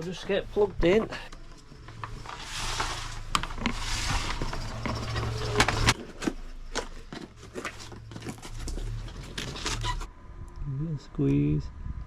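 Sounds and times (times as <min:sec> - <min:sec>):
low hum: 0:00.2 - 0:12.0.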